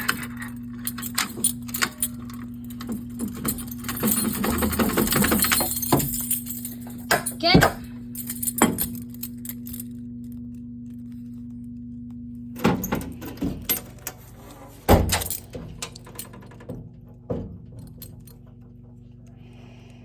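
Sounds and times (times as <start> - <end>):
keys jangling against metal: 0.0 - 9.9, 12.8 - 16.6
steady low hum: 0.0 - 20.0.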